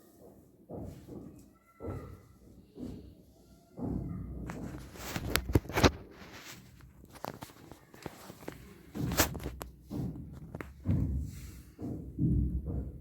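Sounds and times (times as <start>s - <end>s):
sharp knocks and clacks: 7.0s - 13.0s.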